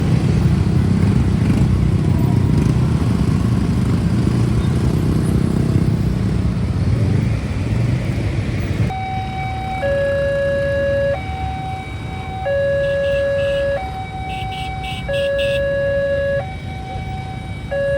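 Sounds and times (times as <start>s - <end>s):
road traffic noise: 0.0s - 17.9s
level crossing alarm two-tone: 8.9s - 17.9s.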